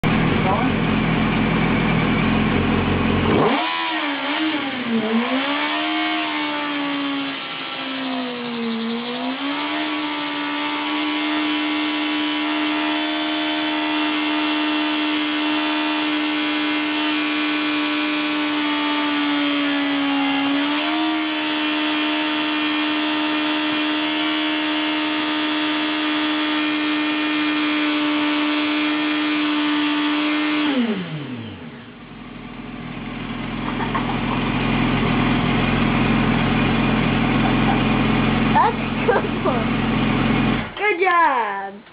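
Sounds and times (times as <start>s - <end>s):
motorcycle engine revving: 0.0s - 41.0s.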